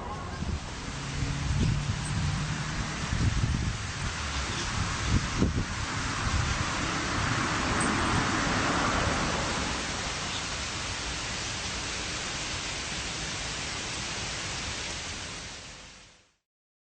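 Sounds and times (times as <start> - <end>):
steady rushing noise: 0.0 - 16.2.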